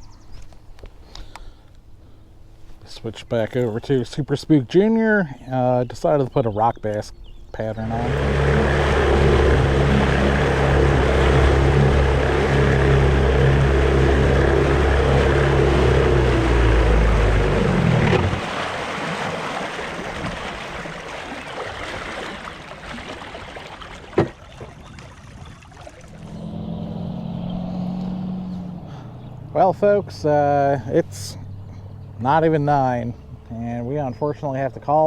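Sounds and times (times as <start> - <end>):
wind: 0.0 - 35.0
outboard motor running: 7.2 - 35.0
water hissing: 7.8 - 18.7.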